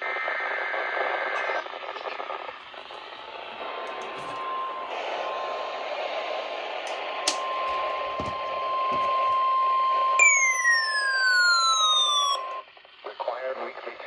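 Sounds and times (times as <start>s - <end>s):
whistle gliding down in pitch: 9.0s - 12.6s.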